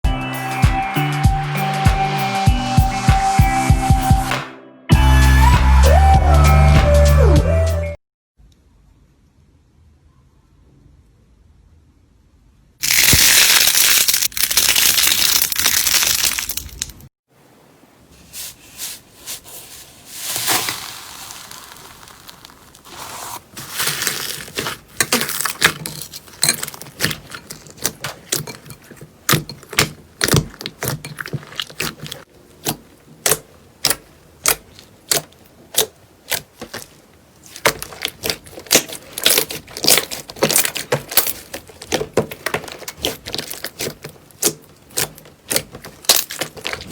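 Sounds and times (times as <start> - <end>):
slime crunchy crackle: 12.8 - 17.0, 20.1 - 46.9
slime air pockets popping: 23.7 - 46.9.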